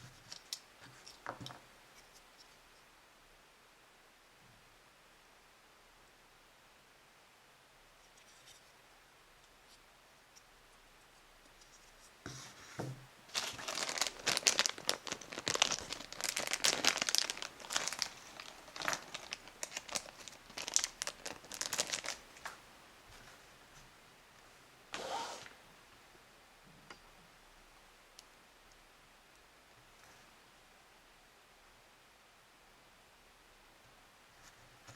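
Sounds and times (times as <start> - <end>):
packaging wrapper crinkling and tearing: 13.3 - 22.4.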